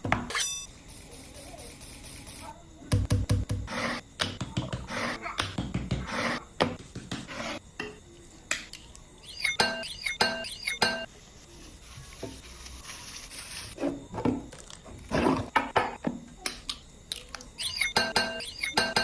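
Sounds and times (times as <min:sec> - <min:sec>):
ringing tones: 0:09.2 - 0:11.1, 0:17.6 - 0:19.0
utensils clinking on dishes: 0:17.6 - 0:19.0.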